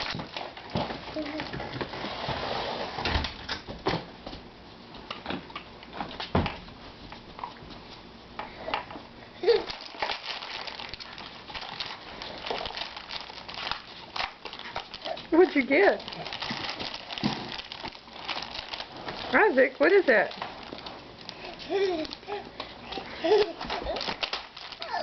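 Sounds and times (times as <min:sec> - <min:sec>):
plastic package crinkling: 0:00.0 - 0:01.5, 0:09.4 - 0:25.0.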